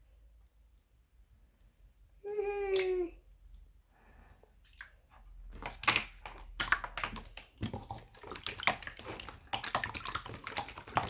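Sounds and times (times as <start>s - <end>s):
slime crackling and popping: 5.6s - 11.0s.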